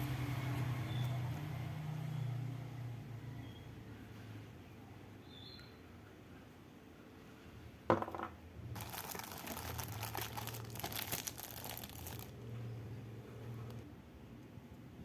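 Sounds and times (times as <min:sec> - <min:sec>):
plastic packaging crinkling: 0:08.8 - 0:12.4.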